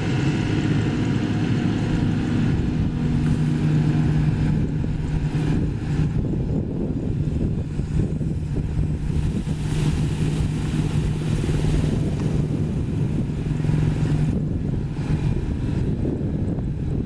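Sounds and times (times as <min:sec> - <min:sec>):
excavator diesel engine running: 0:00.0 - 0:09.0.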